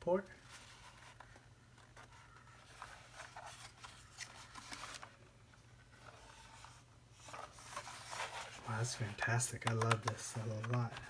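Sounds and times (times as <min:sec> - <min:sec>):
keyboard handling clicks and rustles: 0:08.3 - 0:11.0.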